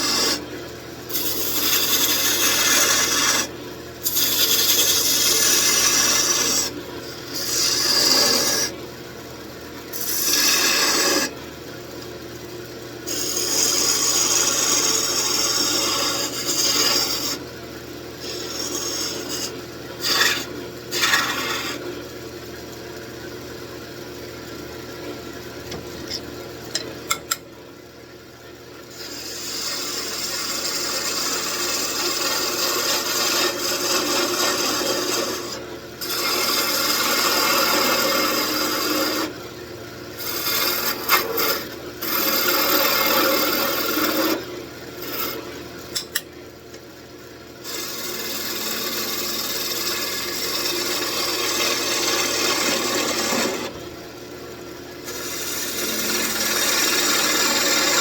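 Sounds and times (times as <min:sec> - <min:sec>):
gouge scraping spinning wood: 0:00.0 - 0:08.8, 0:09.9 - 0:11.4, 0:13.0 - 0:17.5, 0:18.2 - 0:21.9, 0:28.9 - 0:39.4, 0:40.1 - 0:46.1, 0:47.6 - 0:53.9, 0:55.0 - 0:58.0
wood lathe humming: 0:00.0 - 0:09.1, 0:09.7 - 0:11.6, 0:13.0 - 0:17.6, 0:18.2 - 0:22.0, 0:28.9 - 0:46.2, 0:47.5 - 0:58.0.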